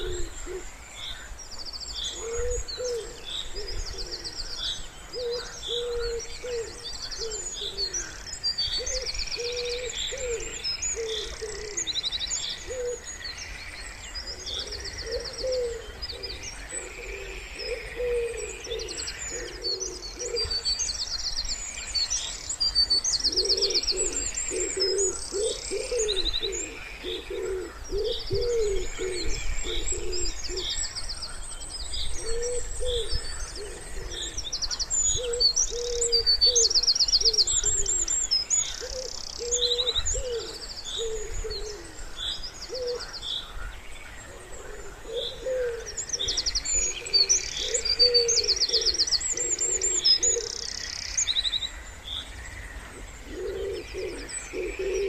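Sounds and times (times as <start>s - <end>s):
pigeon cooing: 0.0s - 0.6s, 2.2s - 4.4s, 5.2s - 8.1s, 8.8s - 11.9s, 14.5s - 20.6s, 23.3s - 30.6s, 35.2s - 38.0s, 38.8s - 42.0s, 44.4s - 46.4s, 47.0s - 50.6s, 53.2s - 55.0s
songbirds trilling and chirping: 0.0s - 55.0s.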